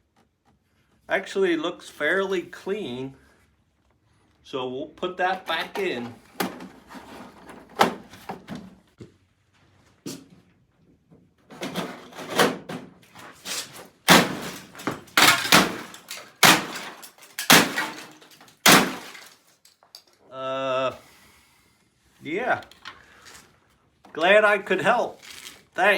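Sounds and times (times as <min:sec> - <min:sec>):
plastic panels scraping and rattling: 0:05.5 - 0:08.7, 0:11.5 - 0:19.4.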